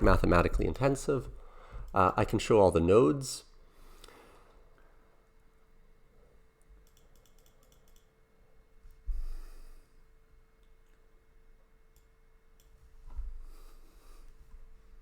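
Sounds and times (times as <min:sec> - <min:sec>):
faint steady hum: 0:00.0 - 0:15.0
breaths into microphone: 0:01.4 - 0:01.9
computer mouse clicks: 0:06.7 - 0:08.1, 0:11.9 - 0:12.8.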